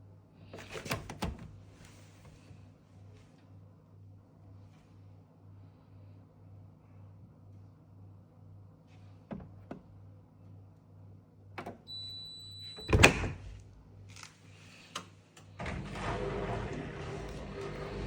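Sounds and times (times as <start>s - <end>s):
washing machine beep: 11.9s - 13.2s
washing machine running: 15.5s - 18.0s.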